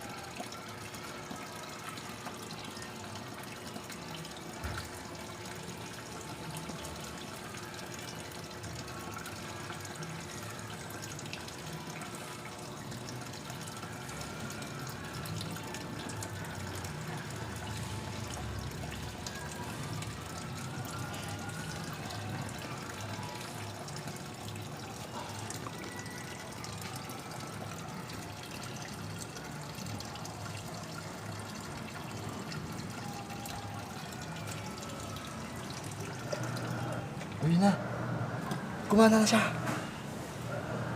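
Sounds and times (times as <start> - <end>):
water filling washing machine: 0.0 - 40.9.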